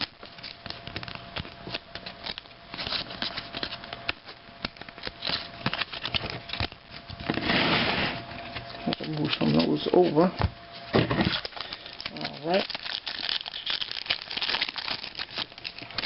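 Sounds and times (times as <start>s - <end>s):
trading cards flipped by hand: 0.0s - 7.4s.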